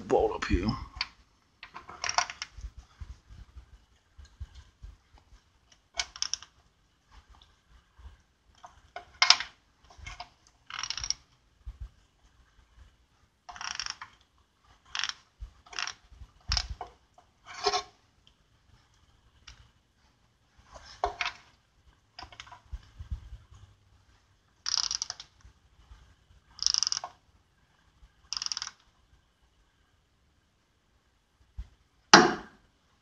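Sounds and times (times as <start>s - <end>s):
socket ratchet clicking: 24.7s - 25.3s, 26.6s - 27.1s, 28.4s - 28.8s.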